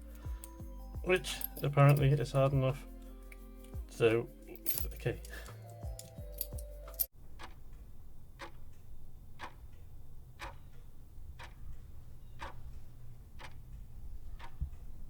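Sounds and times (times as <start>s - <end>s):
background music: 0.0s - 7.1s
clock ticking: 5.8s - 15.0s.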